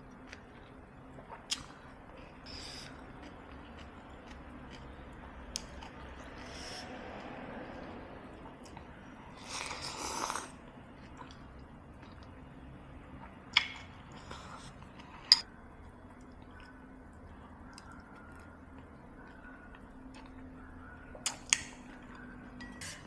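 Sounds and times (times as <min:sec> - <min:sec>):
quiet chewing: 0:00.1 - 0:12.4, 0:13.2 - 0:22.5
spoon clinking against bowl: 0:22.6 - 0:23.0.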